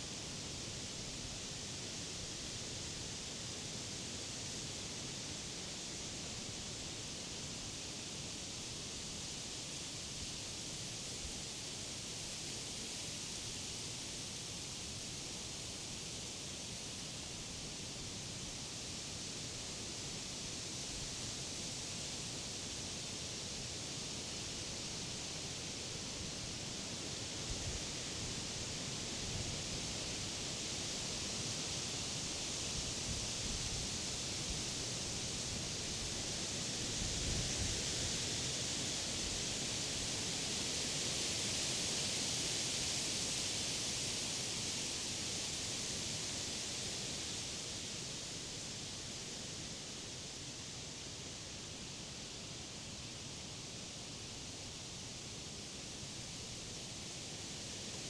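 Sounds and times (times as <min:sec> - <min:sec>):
wind rustling leaves: 0:27.1 - 0:58.0.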